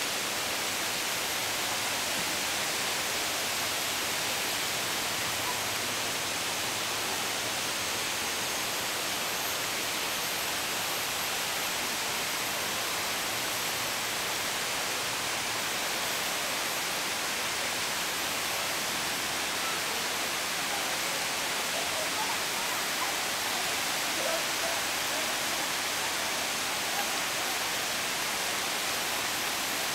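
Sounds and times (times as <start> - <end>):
faint distant voices: 19.4 - 28.3.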